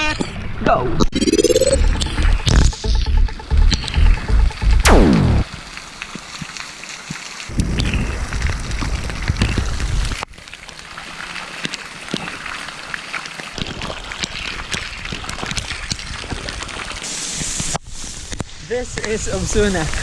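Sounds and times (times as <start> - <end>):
low rumble: 1.2 - 5.5
rain falling: 5.5 - 14.2.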